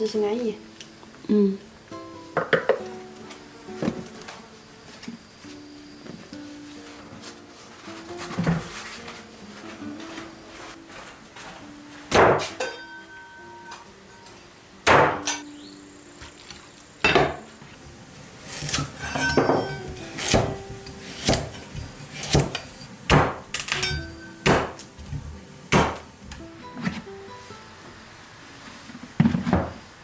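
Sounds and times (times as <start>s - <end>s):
soft background music: 0.0s - 30.0s
kitchen utensils striking: 12.2s - 13.0s, 15.0s - 15.5s, 18.5s - 24.9s.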